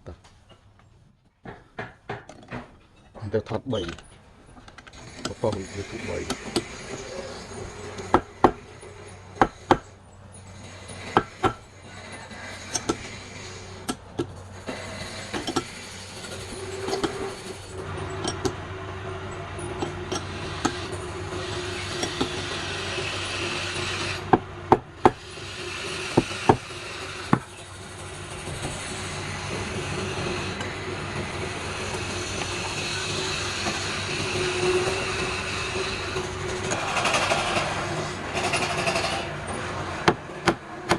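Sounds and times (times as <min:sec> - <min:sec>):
sharp knocks: 0:01.4 - 0:02.8, 0:11.0 - 0:11.6
turning tool cutting wood: 0:04.8 - 0:40.9
wood lathe humming: 0:04.8 - 0:40.9.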